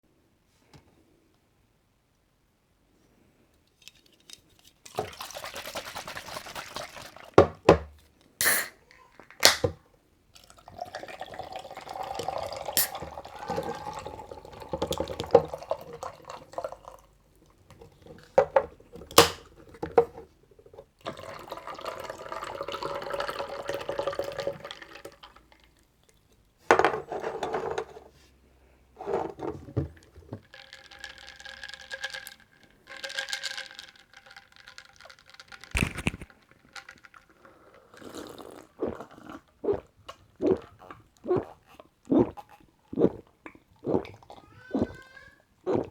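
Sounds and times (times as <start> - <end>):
drink pouring into a glass: 4.9 - 7.6, 10.4 - 17.2, 21.1 - 25.6, 30.5 - 39.4
container clicks and taps: 35.8 - 36.3.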